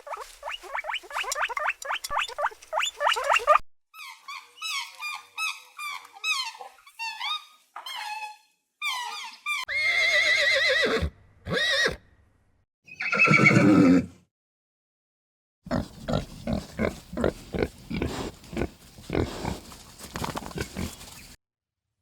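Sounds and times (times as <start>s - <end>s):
farm animals calling: 0.0s - 6.8s, 15.7s - 21.4s.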